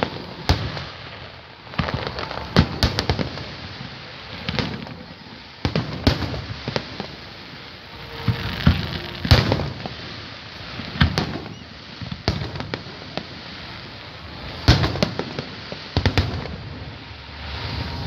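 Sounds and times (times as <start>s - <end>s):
crowd murmur: 0.0s - 12.0s
fireworks bursting: 0.0s - 18.0s
fireworks crackling: 0.0s - 18.0s.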